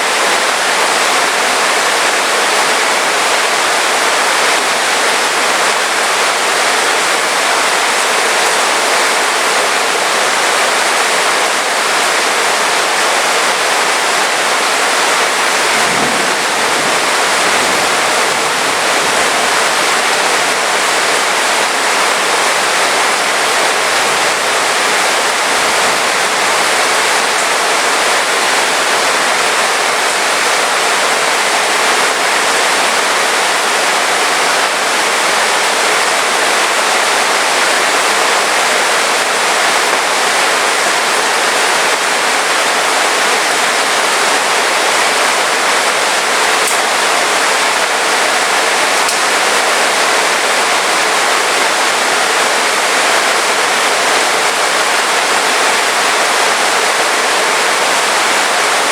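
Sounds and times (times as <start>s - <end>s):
heavy rain falling: 0.0s - 58.9s.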